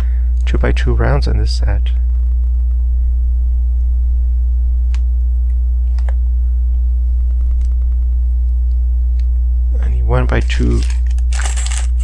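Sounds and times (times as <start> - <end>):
low electrical hum: 0.0 - 12.0
plastic pieces clicking: 10.7 - 12.0.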